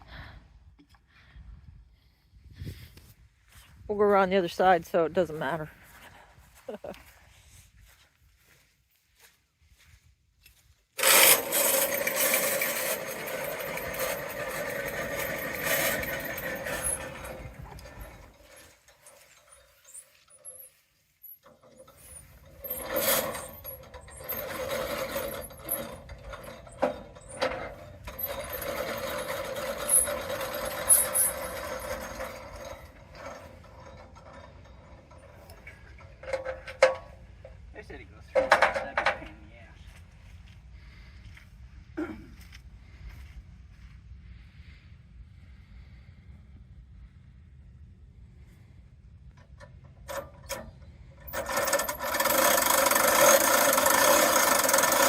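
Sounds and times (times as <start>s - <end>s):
sawmill cutting wood: 11.0s - 20.6s, 21.4s - 35.3s, 50.2s - 55.0s.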